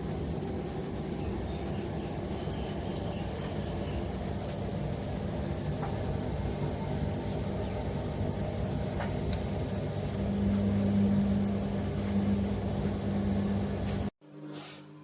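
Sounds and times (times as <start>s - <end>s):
washing machine motor hum: 0.0s - 14.4s.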